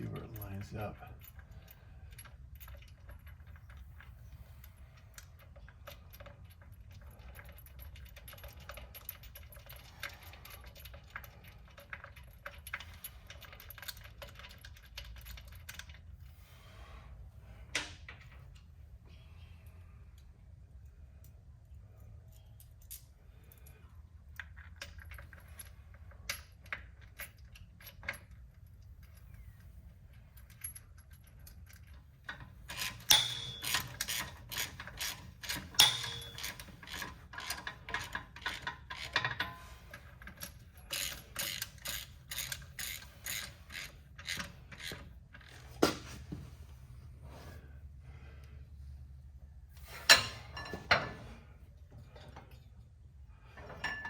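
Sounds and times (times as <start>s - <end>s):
metal tools clinking: 30.4s - 45.6s, 50.0s - 51.4s
ratchet wrench clicking: 32.7s - 39.4s, 40.9s - 45.0s.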